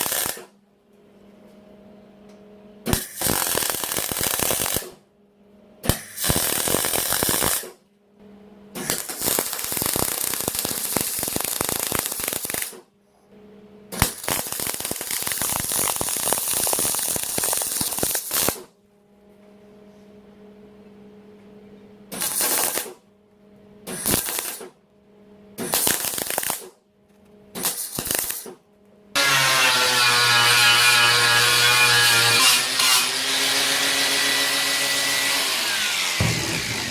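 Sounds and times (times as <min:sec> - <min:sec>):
welder arc crackling: 0:00.0 - 0:00.5, 0:03.0 - 0:05.0, 0:06.0 - 0:07.7, 0:08.8 - 0:12.8, 0:14.0 - 0:18.6, 0:24.0 - 0:24.7, 0:25.7 - 0:26.7, 0:27.6 - 0:28.5, 0:35.9 - 0:36.9
welder humming: 0:30.0 - 0:36.9
power tool running: 0:32.6 - 0:36.9.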